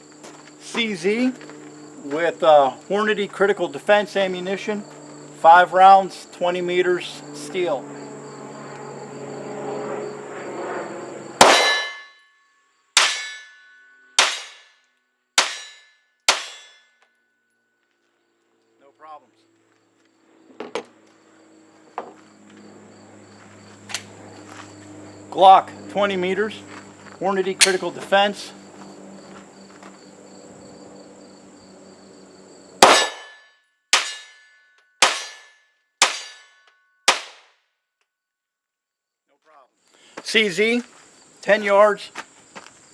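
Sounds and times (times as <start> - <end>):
crickets chirping: 0.0 - 11.9, 18.0 - 33.3, 38.8 - 42.9
pistol shots: 11.4 - 12.0, 32.8 - 33.4, 35.0 - 35.4, 37.1 - 37.4
bullet hitting steel target: 11.4 - 12.2, 13.0 - 14.8, 15.4 - 17.0, 27.6 - 27.8, 32.8 - 37.4.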